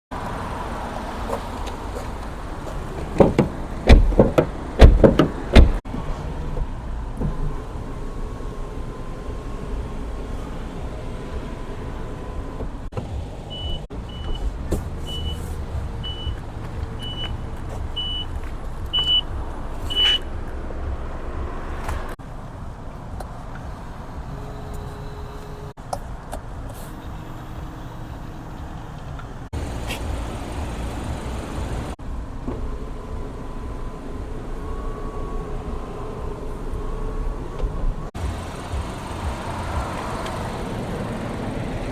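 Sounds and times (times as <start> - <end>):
loud thumps: 3.0 - 5.8.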